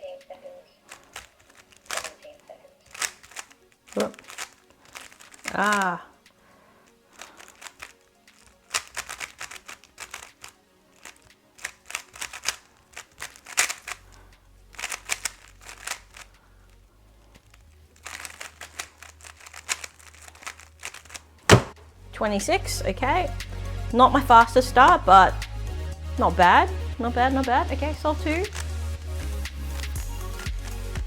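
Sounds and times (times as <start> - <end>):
speed cube turning clicks: 0.8 - 6.4, 7.1 - 21.6, 28.4 - 28.9.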